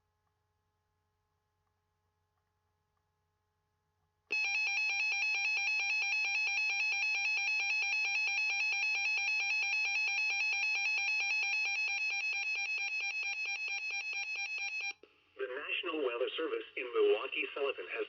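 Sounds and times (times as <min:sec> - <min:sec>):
warbling electronic alarm tone: 0:04.4 - 0:14.9.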